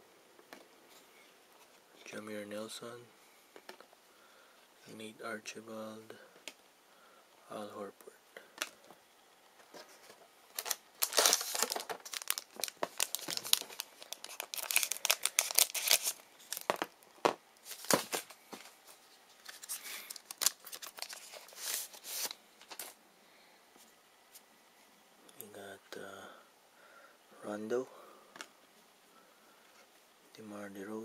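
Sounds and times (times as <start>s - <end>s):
plastic wrapper tearing and crinkling: 10.5s - 17.0s, 19.4s - 23.0s.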